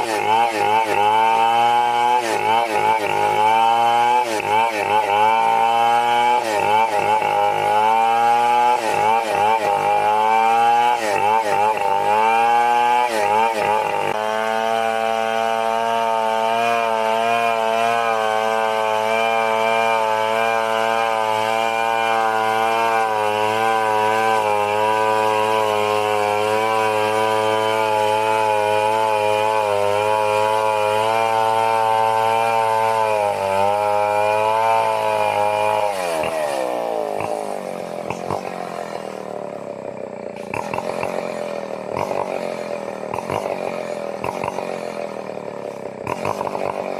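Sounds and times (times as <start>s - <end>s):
chainsaw cutting through timber: 0.0s - 46.9s.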